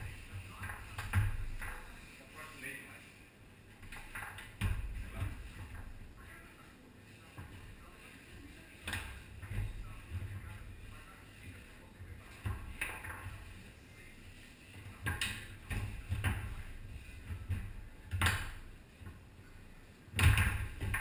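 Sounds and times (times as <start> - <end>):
foosball ball knocking: 15.1 - 19.2, 20.2 - 21.0.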